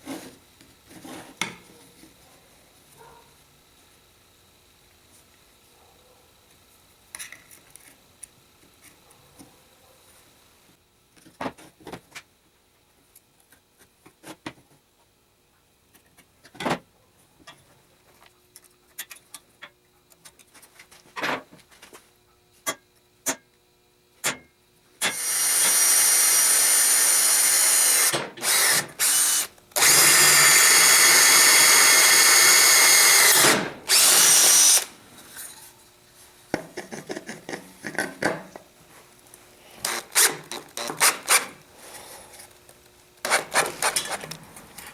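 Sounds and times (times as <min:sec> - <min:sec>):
power drill running: 0:25.0 - 0:34.9.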